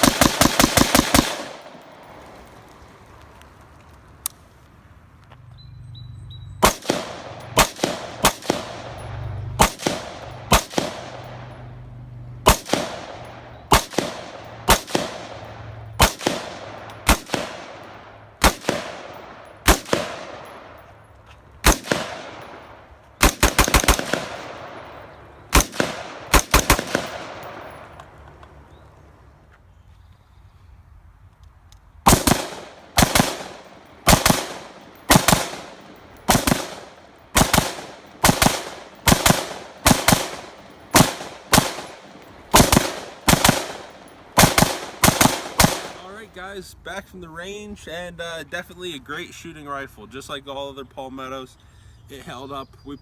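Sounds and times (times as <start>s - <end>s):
rifle gunshots with echo: 0.0s - 2.1s, 6.6s - 11.6s, 12.4s - 20.9s, 21.6s - 27.9s, 32.0s - 46.2s.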